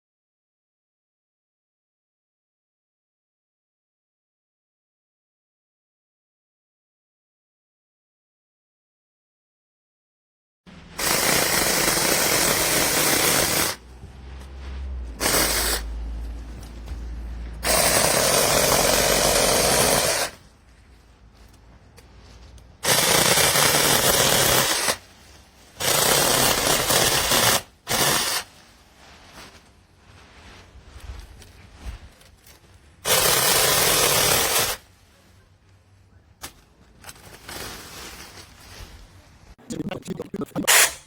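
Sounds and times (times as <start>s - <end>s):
mini chainsaw running: 11.0s - 13.8s, 15.2s - 15.8s, 17.6s - 20.4s, 22.8s - 25.0s, 25.8s - 28.4s.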